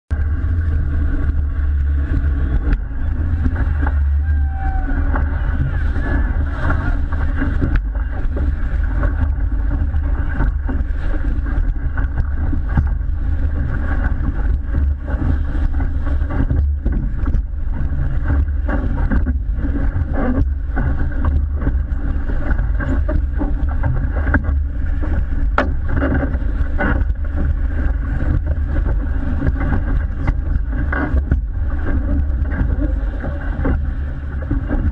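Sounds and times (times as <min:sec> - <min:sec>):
motorboat engine running: 0:00.1 - 0:34.9.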